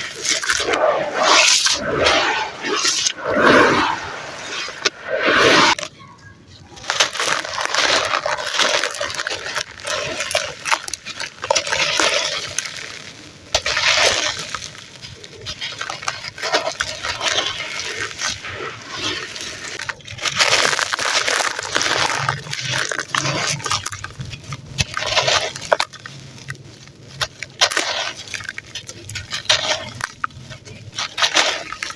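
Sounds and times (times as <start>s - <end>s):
wet squishing: 0.0s - 3.9s, 6.8s - 31.9s
gritty sand crackling: 0.0s - 31.9s.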